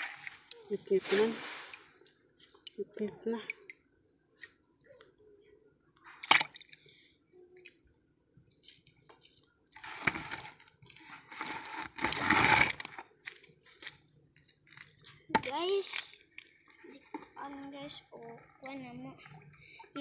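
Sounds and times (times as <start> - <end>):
water splashing and sloshing: 0.0 - 4.6, 6.0 - 7.8, 8.6 - 14.0.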